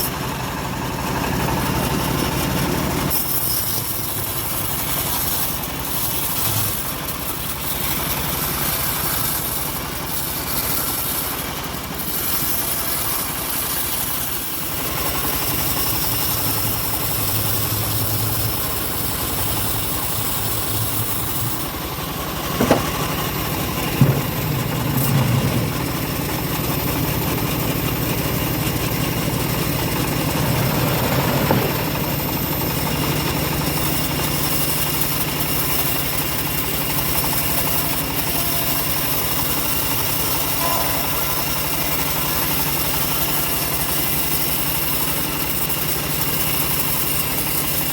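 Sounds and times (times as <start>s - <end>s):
bandsaw sawmill engine running: 0.0s - 47.9s
sharp knocks: 22.5s - 26.0s.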